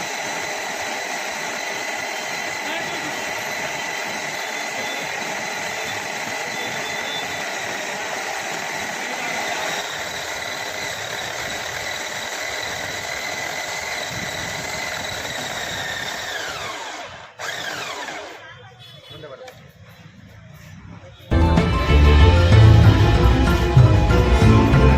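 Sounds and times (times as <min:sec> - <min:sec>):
mixer grinder whining: 0:00.0 - 0:18.4.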